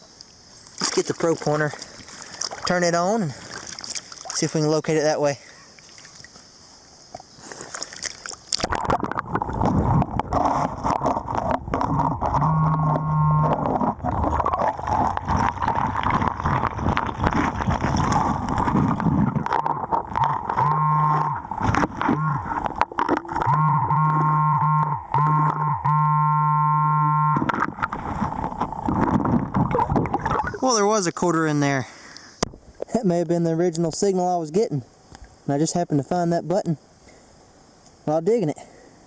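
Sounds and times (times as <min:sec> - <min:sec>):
water sloshing: 0:00.6 - 0:06.5, 0:07.1 - 0:25.7, 0:27.4 - 0:32.8
metal detector buzzing tone: 0:11.9 - 0:13.8, 0:19.5 - 0:27.7
gravel and rocks clattering: 0:13.6 - 0:20.6.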